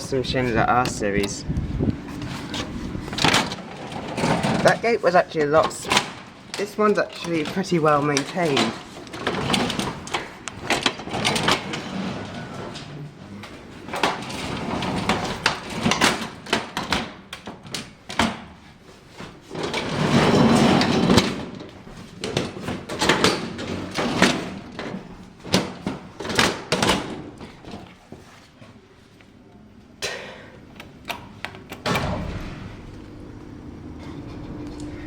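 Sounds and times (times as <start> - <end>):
lift gate clicking and rattling: 30.7 - 35.0.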